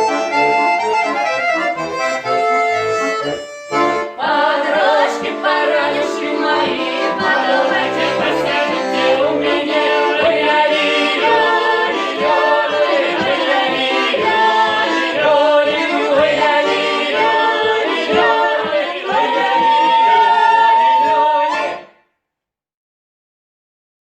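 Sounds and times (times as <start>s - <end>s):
low rhythmic accompaniment: 0.0s - 21.9s
group singing folk song: 3.3s - 22.0s.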